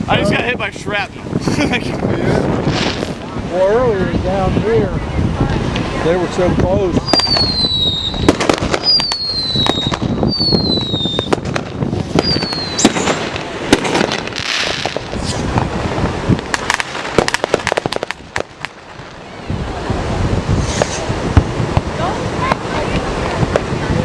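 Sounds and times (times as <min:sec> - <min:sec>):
firework bangs and pops: 0:01.3 - 0:03.5, 0:07.0 - 0:19.2, 0:20.2 - 0:24.0
firework whistles: 0:06.9 - 0:15.7, 0:20.5 - 0:21.2
crackling pops: 0:07.1 - 0:19.2, 0:20.7 - 0:21.9.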